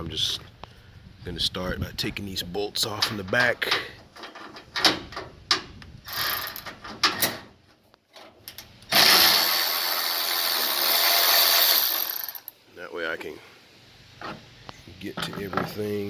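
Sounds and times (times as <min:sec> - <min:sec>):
power wrench running: 0:06.1 - 0:06.6, 0:08.9 - 0:12.5.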